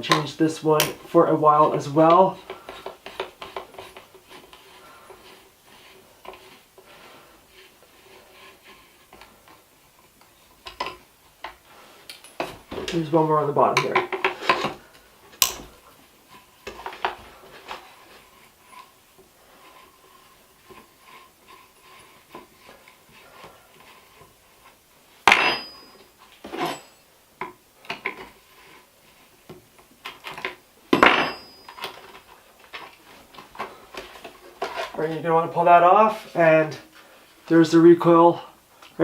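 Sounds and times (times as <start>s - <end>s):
hand tools clicking and clattering: 0.0s - 6.6s, 9.1s - 19.0s, 25.2s - 28.4s, 30.0s - 35.0s.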